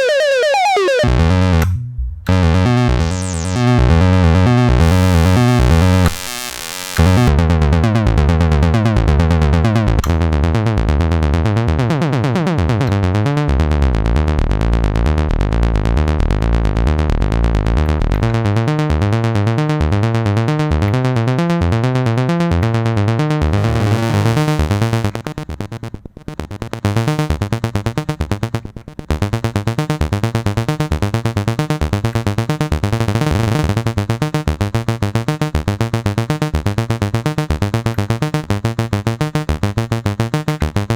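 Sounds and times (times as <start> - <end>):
falling synth sweep: 0.0 - 1.6, 2.3 - 7.3, 23.4 - 25.1
synthesizer sequenced riff: 0.0 - 34.5
steady low bass: 1.0 - 25.7.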